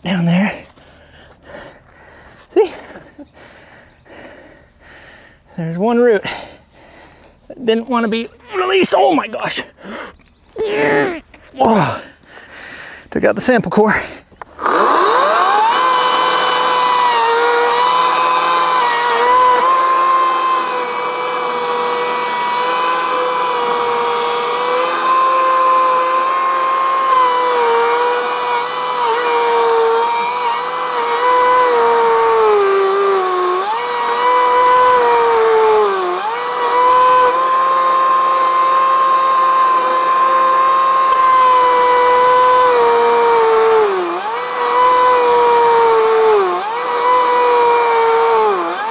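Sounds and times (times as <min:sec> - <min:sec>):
chainsaw cutting wood: 0:14.4 - 0:48.9.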